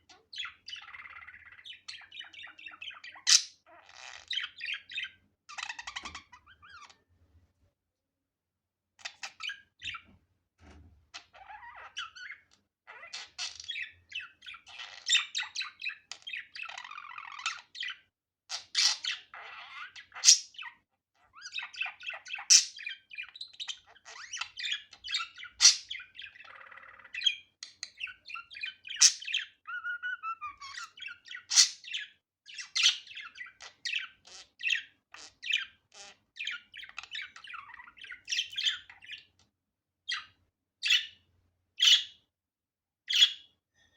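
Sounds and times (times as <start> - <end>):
budgerigar chattering and warbling: 21.3 - 39.2, 40.1 - 41.2, 41.8 - 42.2, 43.1 - 43.5.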